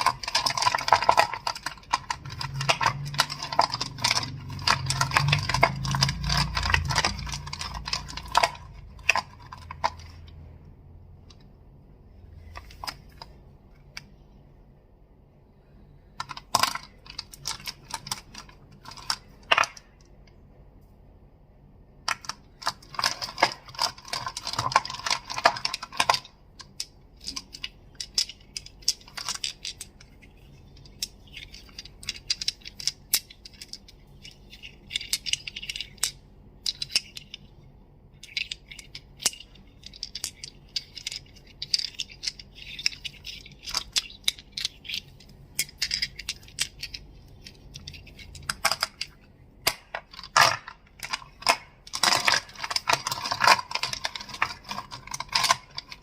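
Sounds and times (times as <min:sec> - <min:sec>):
crystals clicking together: 0:00.0 - 0:10.4, 0:38.2 - 0:56.0.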